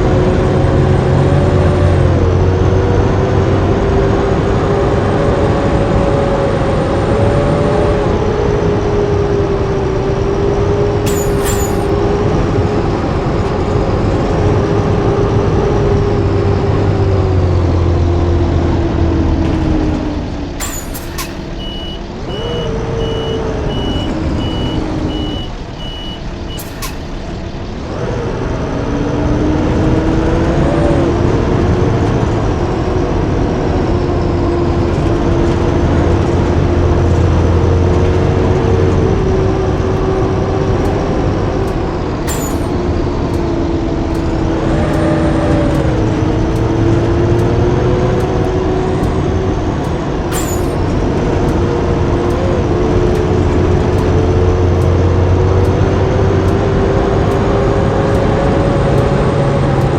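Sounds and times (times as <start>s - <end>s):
bus engine droning with whine: 0.0s - 59.9s
short sharp clicks: 11.1s - 11.9s, 20.6s - 22.5s, 26.5s - 27.3s, 40.8s - 59.9s.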